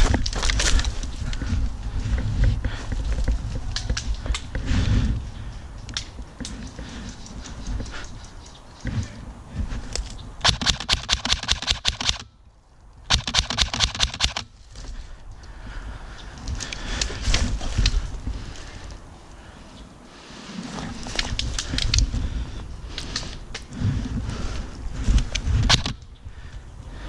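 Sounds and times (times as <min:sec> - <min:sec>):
airsoft gun firing bursts: 0:10.4 - 0:12.2, 0:13.1 - 0:14.5, 0:25.7 - 0:26.0.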